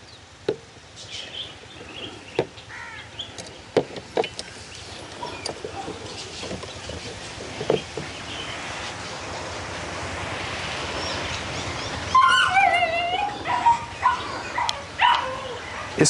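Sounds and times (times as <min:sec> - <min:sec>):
light clicks and knocks: 0:03.3 - 0:08.2
dog whining: 0:12.1 - 0:16.0.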